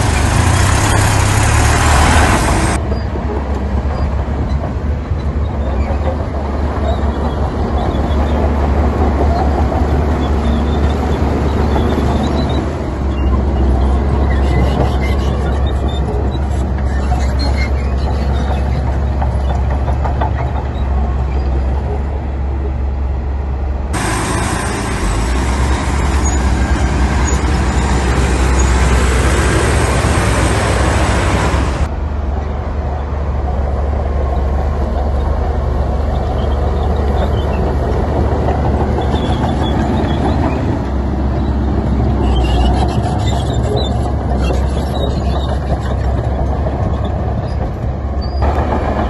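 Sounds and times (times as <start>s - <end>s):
diesel machinery rumbling: 0.0s - 49.0s
loud rushing hiss: 24.0s - 26.2s.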